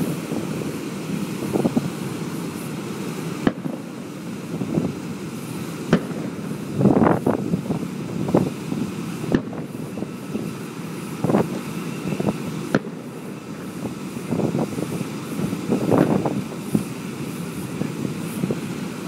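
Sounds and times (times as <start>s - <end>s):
fireworks bangs: 0.0s - 10.6s, 11.2s - 18.3s
small firework pops: 3.4s - 4.0s, 5.8s - 7.3s, 9.2s - 9.7s, 12.7s - 13.7s, 15.9s - 16.9s.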